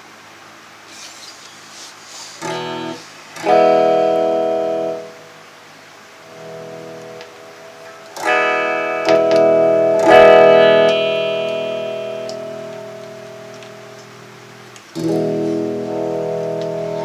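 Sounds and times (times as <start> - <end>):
electric guitar chords strummed: 2.4 - 17.0.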